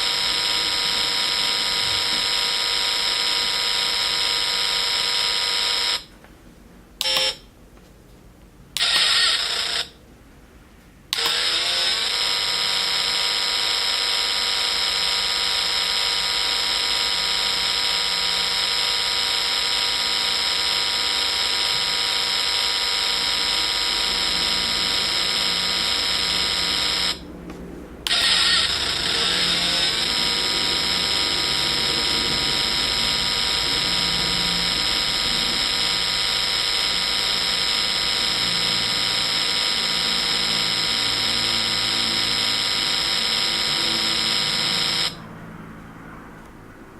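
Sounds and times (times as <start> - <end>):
synthesized car engine tone: 0.0 - 6.1, 7.0 - 7.5, 8.8 - 10.0, 11.1 - 46.3.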